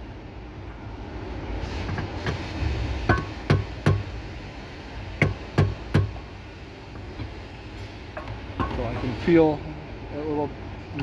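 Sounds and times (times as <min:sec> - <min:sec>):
sharp metallic taps: 0:05.2 - 0:06.2.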